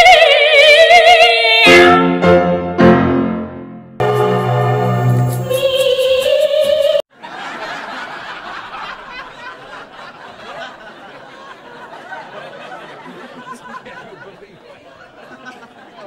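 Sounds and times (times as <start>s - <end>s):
piano: 1.6s - 7.0s
operatic singing: 4.0s - 7.0s
crowd chattering and laughing: 7.1s - 16.0s.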